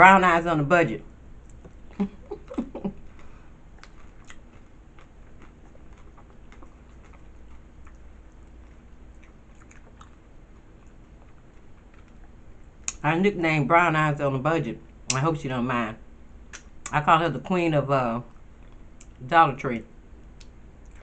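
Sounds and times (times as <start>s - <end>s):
low steady hum: 0.0s - 21.0s
person chewing crunchy food: 1.4s - 13.0s, 20.3s - 21.0s.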